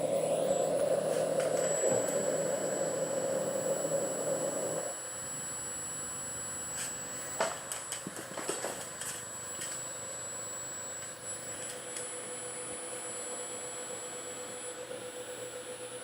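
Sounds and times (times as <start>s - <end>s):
machine motor whining: 0.0s - 16.0s.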